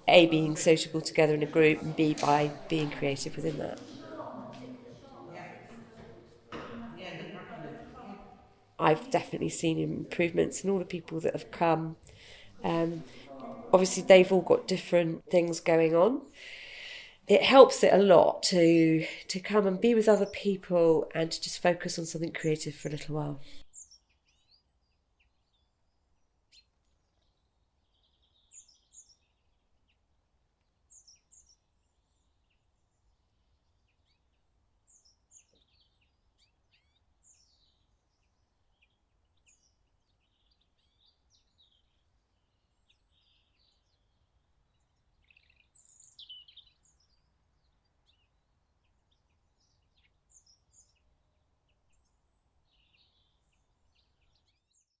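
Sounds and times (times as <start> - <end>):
small birds chirping: 21.4 - 55.0.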